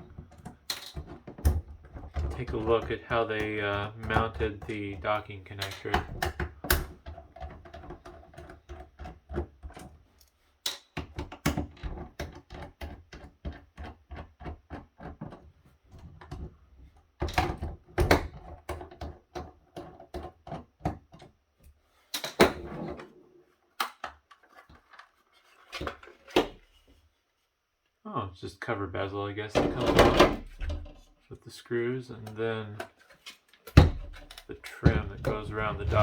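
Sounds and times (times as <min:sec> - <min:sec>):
plastic knocks: 0:00.1 - 0:08.0, 0:33.8 - 0:36.0.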